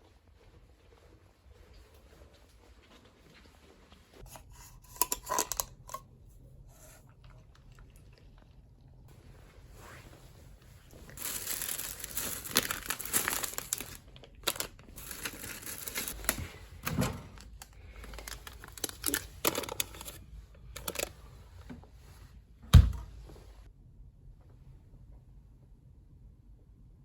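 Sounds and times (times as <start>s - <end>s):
packaging crinkling: 11.0s - 21.1s
heavy thump: 22.7s - 23.1s.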